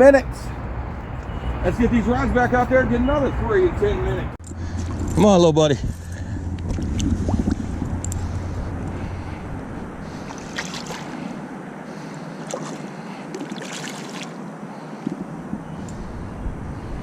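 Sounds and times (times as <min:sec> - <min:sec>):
wind: 0:00.0 - 0:17.0
water noise: 0:06.0 - 0:16.7.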